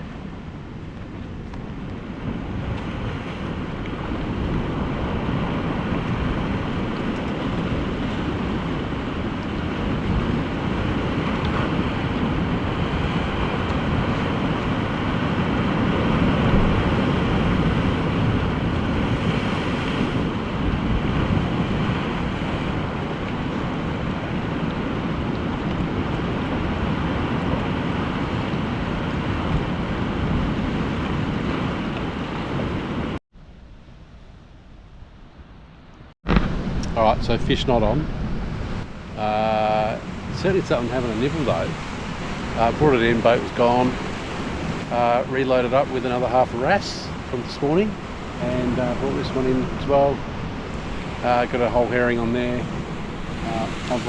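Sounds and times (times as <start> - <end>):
ocean surf breaking on rocks: 0.0 - 33.2, 36.3 - 54.0
wind buffeting microphone: 0.0 - 54.0.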